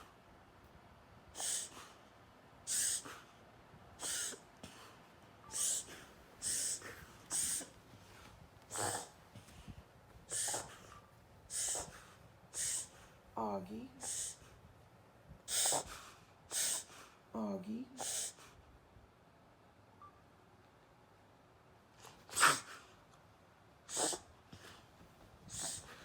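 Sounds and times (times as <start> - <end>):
dog reverse sneezing: 1.4 - 2.0, 2.7 - 3.3, 4.0 - 4.9, 5.5 - 7.8, 8.7 - 9.2, 10.3 - 13.1, 14.0 - 14.5, 15.5 - 17.1, 18.0 - 18.6, 22.0 - 22.9, 23.9 - 24.8, 25.4 - 26.0.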